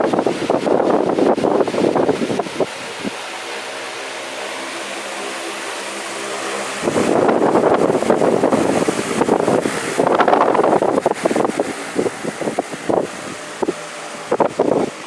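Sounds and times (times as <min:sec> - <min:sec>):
airflow buffeting microphone: 0:00.0 - 0:15.0
electric fan running: 0:00.0 - 0:15.0.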